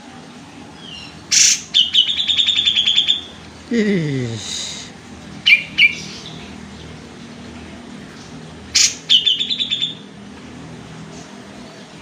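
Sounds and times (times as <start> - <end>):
low steady hum: 0.0 - 12.0
bird calling with high chirps: 0.8 - 3.4, 5.4 - 6.9, 8.7 - 10.1.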